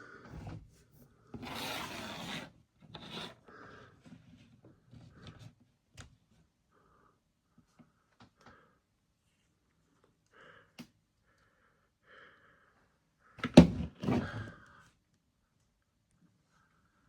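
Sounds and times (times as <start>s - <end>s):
hands scraping plastic toy: 1.4s - 3.4s.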